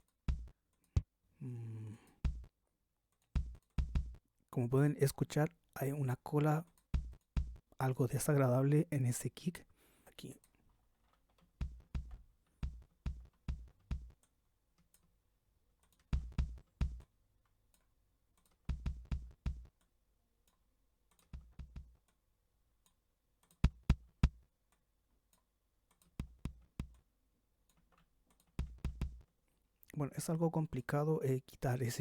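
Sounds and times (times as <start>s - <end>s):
kick drum thumps with click: 0.3s - 1.1s, 2.2s - 2.6s, 3.4s - 4.2s, 6.9s - 7.8s, 11.5s - 14.2s, 16.1s - 17.1s, 18.7s - 19.8s, 21.3s - 22.0s, 23.6s - 24.5s, 26.2s - 27.0s, 28.6s - 29.3s.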